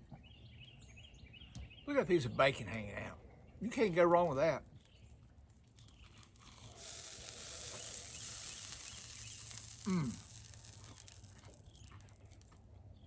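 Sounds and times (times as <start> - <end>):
steady hiss: 6.5 - 11.4
man humming mm while eating: 9.8 - 10.4.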